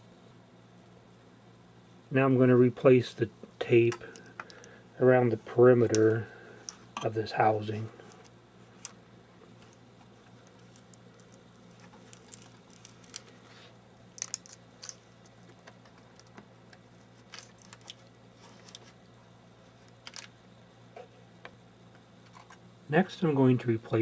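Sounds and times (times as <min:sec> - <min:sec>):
faint steady hum: 0:00.0 - 0:24.0
adhesive tape crackling: 0:08.0 - 0:19.2, 0:19.8 - 0:20.3.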